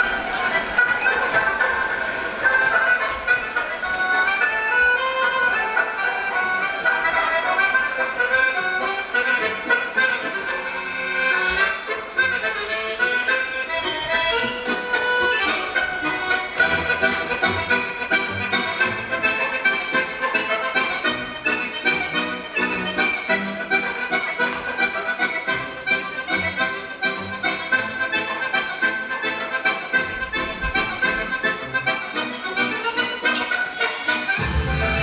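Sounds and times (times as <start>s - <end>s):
bright melody over a beat: 30.8s - 35.0s
bass: 34.3s - 35.0s.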